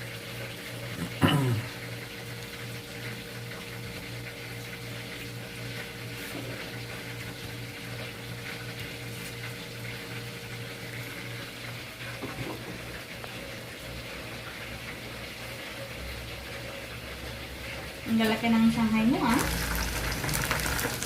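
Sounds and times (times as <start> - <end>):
food sizzling in hot oil: 18.1 - 21.0.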